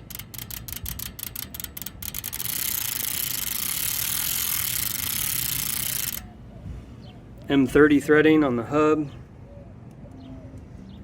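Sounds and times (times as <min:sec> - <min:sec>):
bike freewheel ratcheting clicks: 0:00.0 - 0:06.3.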